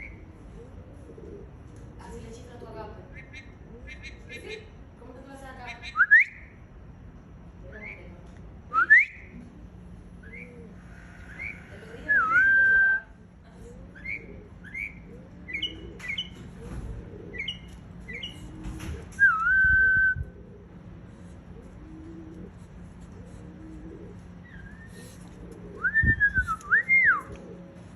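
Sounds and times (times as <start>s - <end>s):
mockingbird singing: 3.1s - 4.7s, 10.2s - 12.9s, 13.9s - 16.4s, 17.2s - 18.6s.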